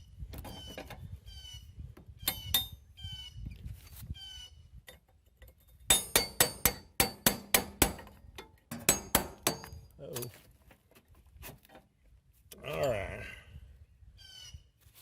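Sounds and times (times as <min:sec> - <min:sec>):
hammer striking steel punch: 0:05.9 - 0:09.8.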